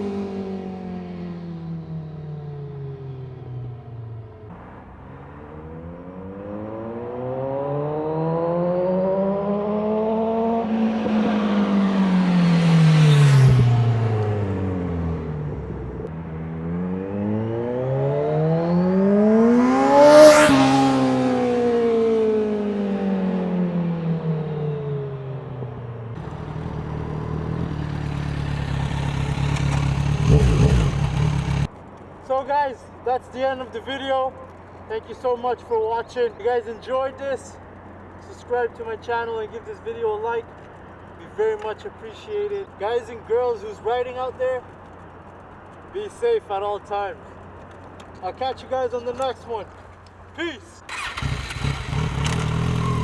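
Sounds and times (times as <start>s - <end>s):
motorcycle passing by: 0.0s - 31.7s, 50.9s - 53.0s.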